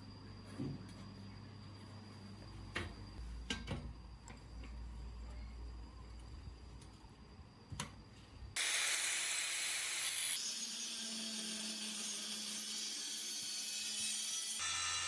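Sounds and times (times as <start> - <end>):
loud steady hiss: 8.6 - 11.0.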